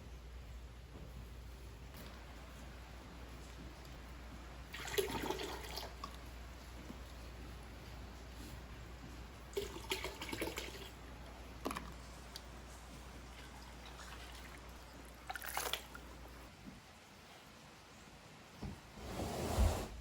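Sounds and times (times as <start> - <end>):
faint water sounds: 1.9 - 18.4.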